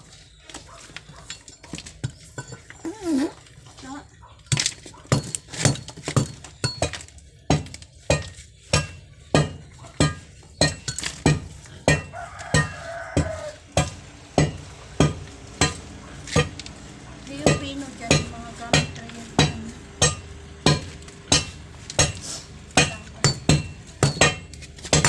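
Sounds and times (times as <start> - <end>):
metal tool scraping concrete: 2.4 - 3.6.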